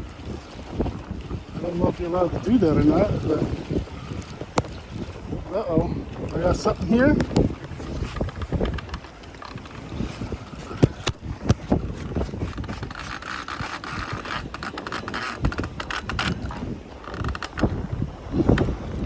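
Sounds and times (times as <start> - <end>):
wind buffeting microphone: 0.0 - 19.0
fishing reel whirring: 7.3 - 17.7.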